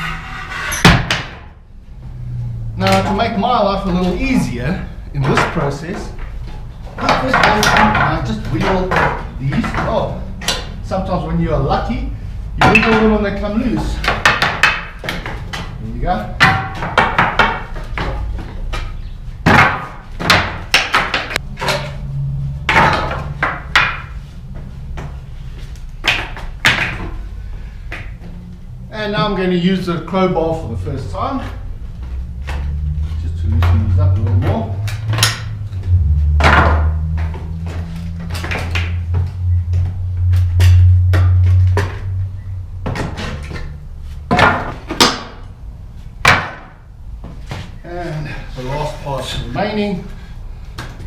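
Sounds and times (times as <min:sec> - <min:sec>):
crowbar prying wooden boards: 0:00.8 - 0:01.5, 0:07.0 - 0:10.7, 0:12.6 - 0:13.2, 0:14.0 - 0:15.7, 0:16.4 - 0:21.9, 0:22.7 - 0:24.1, 0:36.4 - 0:37.1, 0:44.3 - 0:45.4, 0:46.2 - 0:46.8
wooden knocks and clatters: 0:05.2 - 0:10.8, 0:13.8 - 0:15.8, 0:16.4 - 0:22.0, 0:22.6 - 0:25.2, 0:33.6 - 0:42.2, 0:42.8 - 0:45.4
low steady hum: 0:21.4 - 0:48.8.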